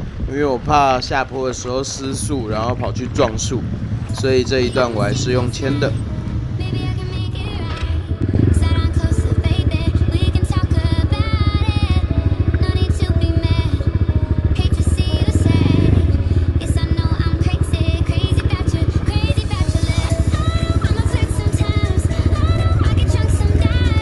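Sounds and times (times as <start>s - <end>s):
dirt bike engine at low revs: 0.0s - 24.0s.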